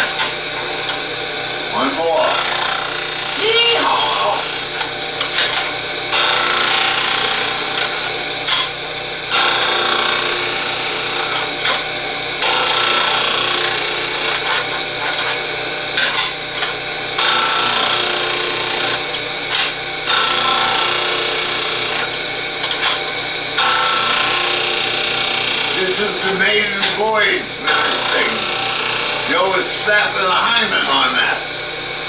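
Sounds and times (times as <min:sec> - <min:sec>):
disc sander grinding wood: 0:00.0 - 0:32.0.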